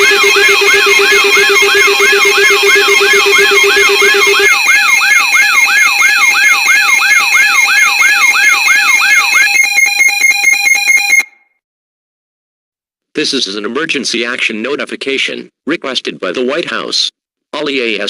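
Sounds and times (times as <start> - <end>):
low pulsing beep: 0.0 - 6.7
rapid stutter of beeps: 0.0 - 11.3
rising whoop alarm tone: 0.0 - 11.3
steady high beeps: 0.0 - 11.4.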